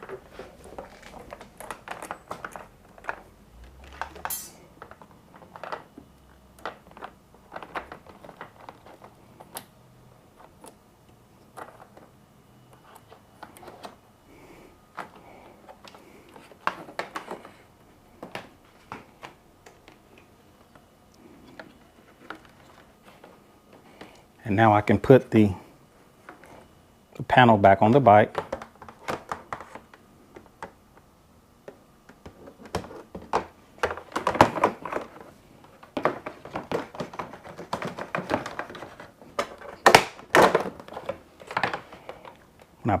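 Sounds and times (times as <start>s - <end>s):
wire and plug clicks and rustles: 0.0s - 9.8s, 14.9s - 17.6s, 28.2s - 42.8s
plastic parts knocking: 31.7s - 42.4s.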